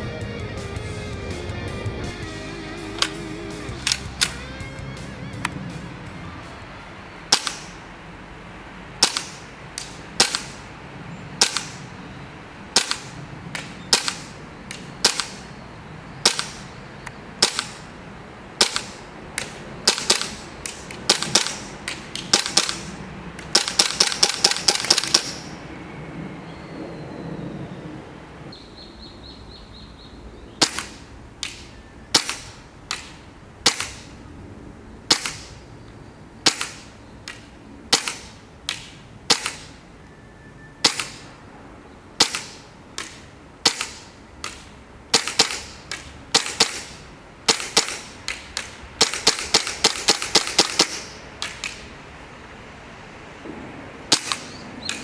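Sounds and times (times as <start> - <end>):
airsoft pistol shots: 7.3 - 7.8, 9.0 - 10.7, 11.4 - 11.9, 12.7 - 15.5, 16.2 - 16.8, 17.4 - 17.8, 18.6 - 25.5, 30.6 - 34.1, 35.1 - 35.6, 36.4 - 39.8, 40.8 - 41.3, 42.2 - 51.8, 53.5 - 55.0.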